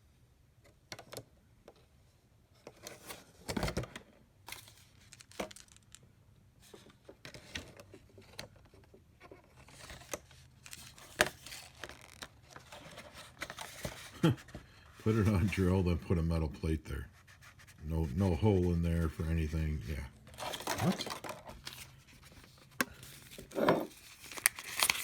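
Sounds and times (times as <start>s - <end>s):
packaging rustling and crinkling: 4.5s - 6.0s, 9.6s - 15.7s, 20.2s - 25.0s.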